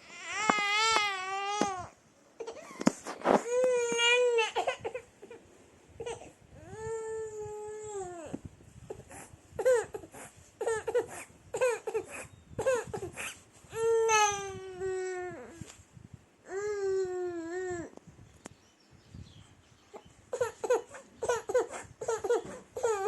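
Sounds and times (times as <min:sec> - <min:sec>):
baby crying: 0:20.3 - 0:23.0.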